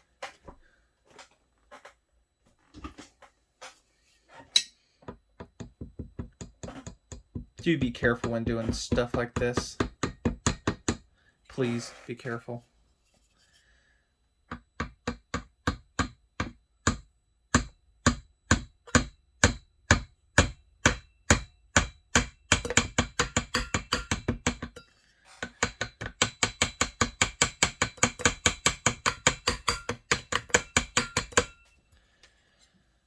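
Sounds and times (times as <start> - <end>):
hammer striking metal: 17.6 - 24.8, 25.6 - 31.7.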